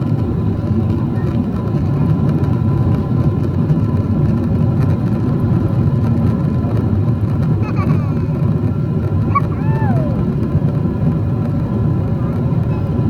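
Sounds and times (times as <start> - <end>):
jet engine low rumble: 0.0 - 13.0
faint steady whine: 6.7 - 13.0.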